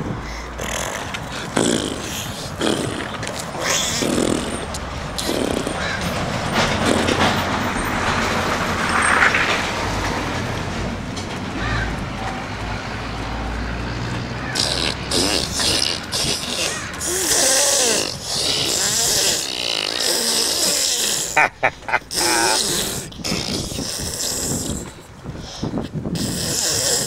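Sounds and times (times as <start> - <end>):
baby blowing raspberries: 0.0 - 7.4, 14.4 - 27.0
baby squealing: 0.6 - 6.0, 14.6 - 23.8.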